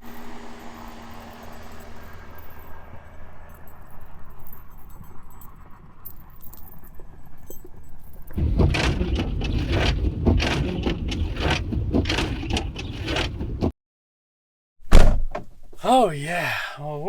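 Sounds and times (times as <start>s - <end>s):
van rumbling through snow: 0.0s - 4.5s, 8.4s - 13.7s
tyre chains clinking: 0.1s - 13.4s.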